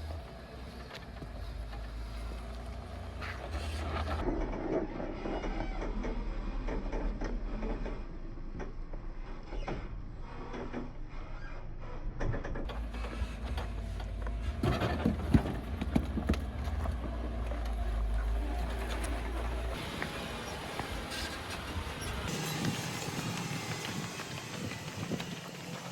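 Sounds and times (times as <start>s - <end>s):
off-road vehicle engine running low: 0.0s - 25.9s
tyres knocking and crunching on stone: 12.8s - 19.7s.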